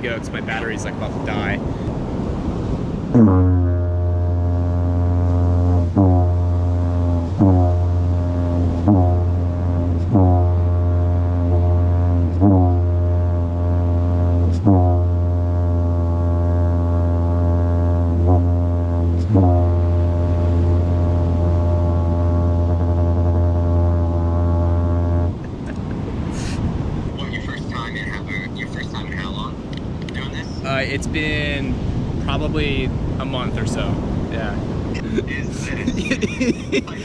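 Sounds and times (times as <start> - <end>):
didgeridoo drone: 3.0 - 26.6, 33.4 - 37.0.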